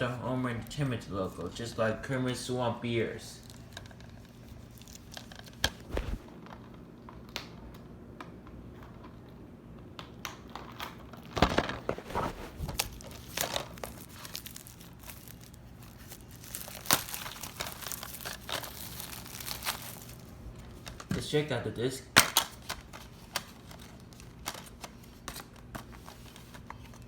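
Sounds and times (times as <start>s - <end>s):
plastic crinkling: 3.4s - 6.2s, 11.2s - 20.3s.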